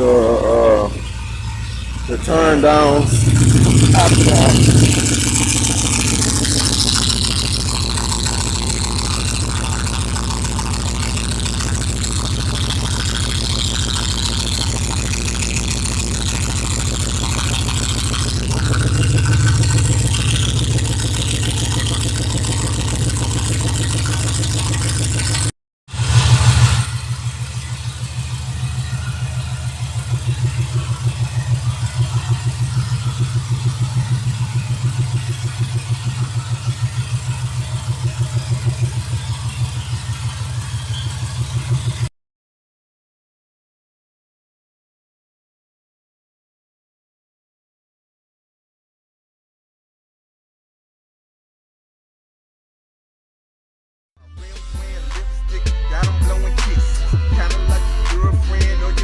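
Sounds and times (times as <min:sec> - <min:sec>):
car engine idling and revving: 0:00.0 - 0:42.1, 0:54.8 - 0:59.0.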